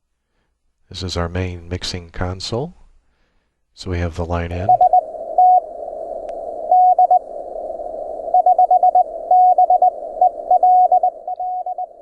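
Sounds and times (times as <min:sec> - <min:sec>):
morse code tone: 0:04.6 - 0:05.6, 0:06.7 - 0:07.2, 0:08.4 - 0:12.0.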